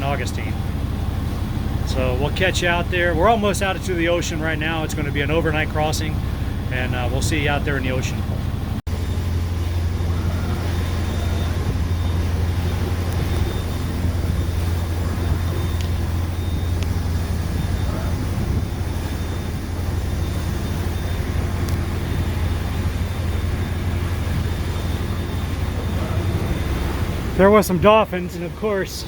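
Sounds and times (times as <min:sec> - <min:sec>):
boat engine droning: 0:00.0 - 0:29.0
wind and water hiss: 0:00.0 - 0:29.0.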